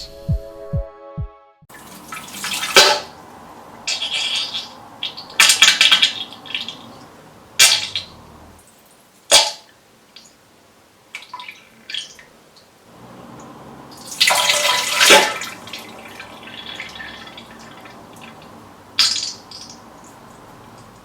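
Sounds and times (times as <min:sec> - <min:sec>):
water splashes: 0:01.7 - 0:10.3, 0:13.3 - 0:21.0.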